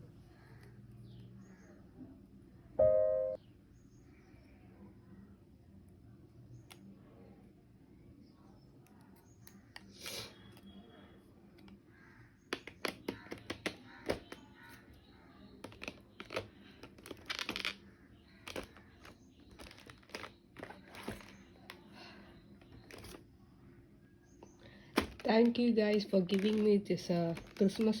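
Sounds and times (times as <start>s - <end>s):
packaging clicks and taps: 12.5s - 14.5s, 15.6s - 17.8s, 18.4s - 23.2s, 24.9s - 28.0s
packaging crinkling and rustling: 15.6s - 17.8s, 18.4s - 21.6s, 22.6s - 23.2s, 24.9s - 28.0s.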